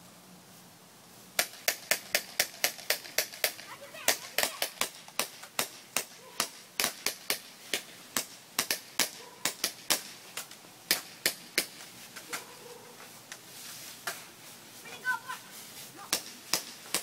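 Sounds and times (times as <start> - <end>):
airsoft guns firing: 1.4 - 10.2.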